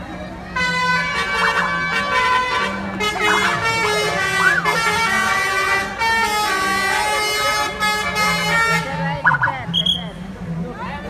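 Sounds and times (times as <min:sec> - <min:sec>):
multi-note bus air horn melody: 0:00.5 - 0:09.2.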